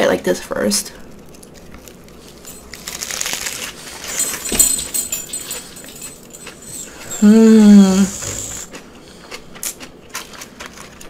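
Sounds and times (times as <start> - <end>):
close chewing with crackling: 1.1 - 4.4, 5.6 - 11.0.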